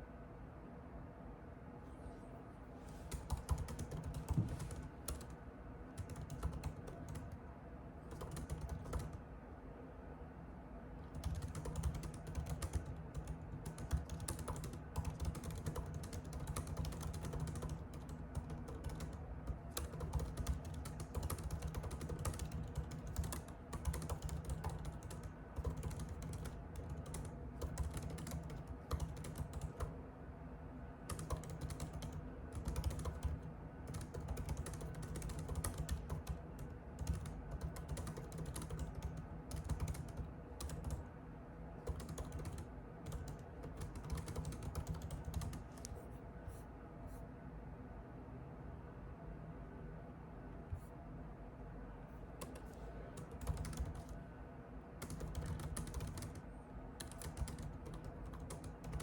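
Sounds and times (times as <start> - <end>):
faint steady hum: 0.0 - 59.0
typing on keyboard: 3.1 - 5.4, 6.0 - 7.4, 8.0 - 9.2, 11.0 - 30.0, 31.0 - 41.1, 41.8 - 45.9, 52.4 - 54.2, 55.0 - 59.0.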